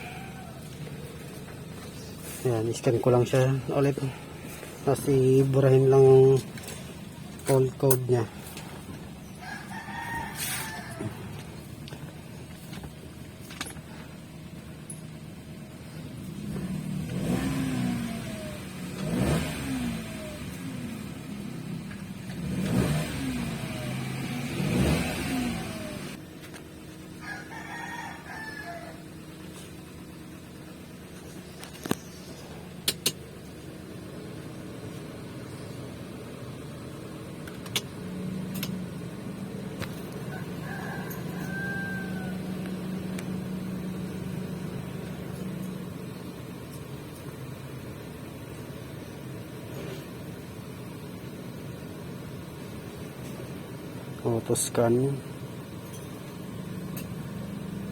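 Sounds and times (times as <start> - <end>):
rooster crowing: 0.0 - 0.8, 9.3 - 11.4, 27.2 - 29.2, 40.2 - 43.6
car engine humming: 0.0 - 57.9
car engine revving: 15.4 - 26.2, 34.0 - 48.4.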